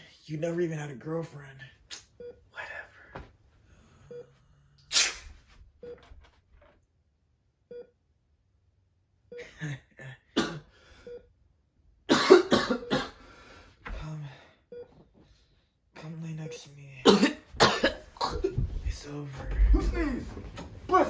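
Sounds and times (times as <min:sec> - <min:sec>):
faint electronic beep: 0:04.1 - 0:04.4
person sneezing: 0:04.9 - 0:05.4.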